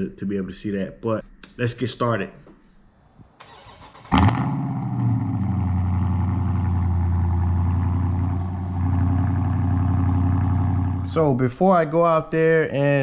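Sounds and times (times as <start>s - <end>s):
car engine idling: 3.4s - 11.2s.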